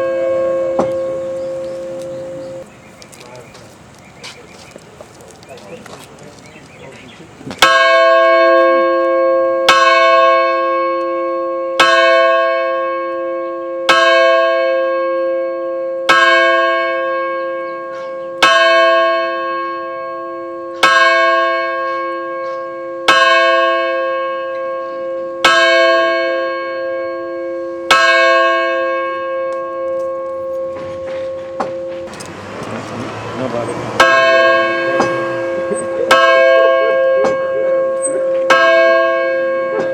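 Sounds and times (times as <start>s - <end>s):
bell tolling: 0.0s - 2.6s, 27.4s - 39.9s.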